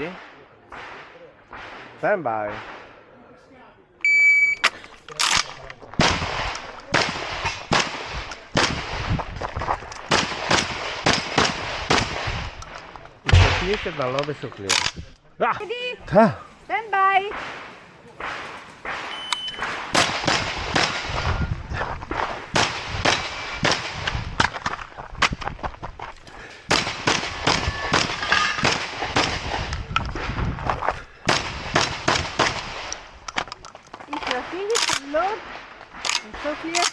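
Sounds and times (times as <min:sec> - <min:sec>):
shotgun shots: 0:06.0 - 0:09.2, 0:10.0 - 0:12.6, 0:13.3 - 0:14.8, 0:17.3 - 0:21.3, 0:22.1 - 0:24.5, 0:26.7 - 0:30.4, 0:31.3 - 0:33.0
shotgun shots with echo: 0:13.3 - 0:14.1, 0:17.3 - 0:21.2.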